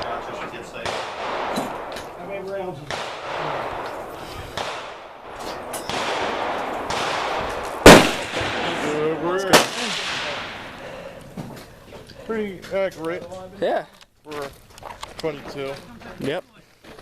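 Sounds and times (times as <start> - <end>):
rifle shots: 0.0 - 10.8.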